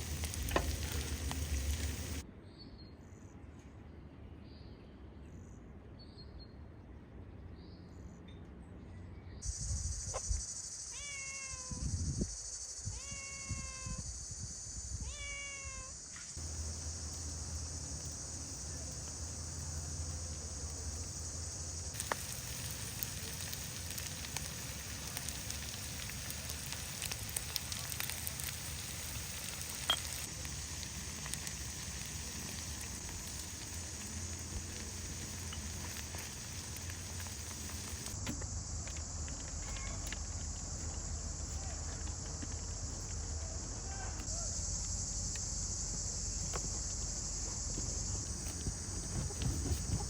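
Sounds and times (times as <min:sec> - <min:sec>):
background hiss and hum: 0:00.0 - 0:02.2, 0:09.4 - 0:50.0
cat meowing: 0:10.9 - 0:11.8, 0:12.9 - 0:14.0, 0:15.0 - 0:16.0.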